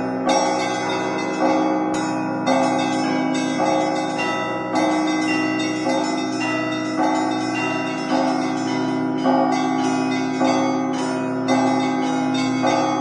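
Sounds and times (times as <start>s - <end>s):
church bells ringing: 0.0s - 13.0s
deep bell tolling: 0.0s - 13.0s.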